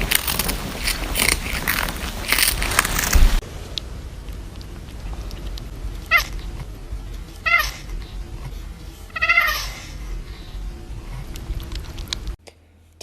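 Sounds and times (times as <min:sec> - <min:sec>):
cat meowing: 0:06.1 - 0:06.5, 0:07.4 - 0:07.9, 0:09.1 - 0:09.8.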